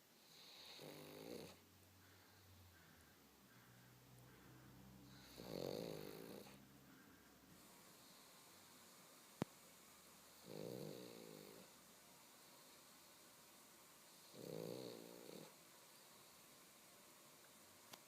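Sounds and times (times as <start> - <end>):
dog snoring: 0.2 - 1.6, 5.0 - 6.6, 10.3 - 11.8, 14.1 - 16.4.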